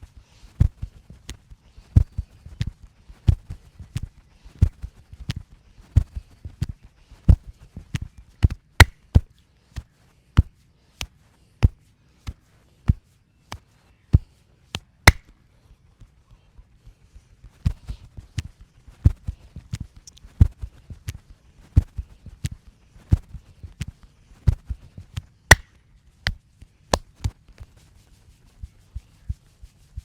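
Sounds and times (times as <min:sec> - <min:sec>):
hands slapping on body: 0:00.6 - 0:05.4, 0:07.3 - 0:15.4, 0:17.5 - 0:27.7.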